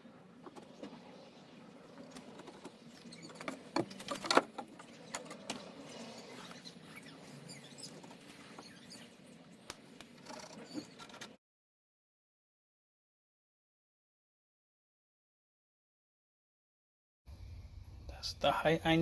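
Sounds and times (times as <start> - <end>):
knocks and clicks of boards and tools: 2.1 - 5.8.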